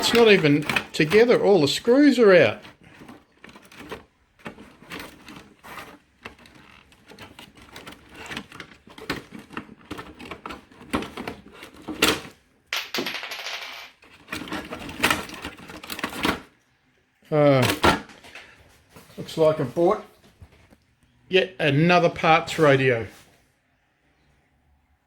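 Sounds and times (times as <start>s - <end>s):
rasping scrape: 0.0s - 11.9s
metal parts clicking and clinking: 0.0s - 16.4s.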